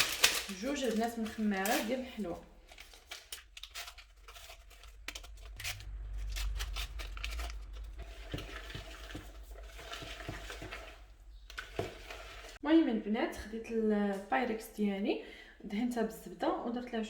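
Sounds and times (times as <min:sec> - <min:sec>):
packets crinkling: 0:00.0 - 0:12.5
low hum: 0:05.1 - 0:09.7.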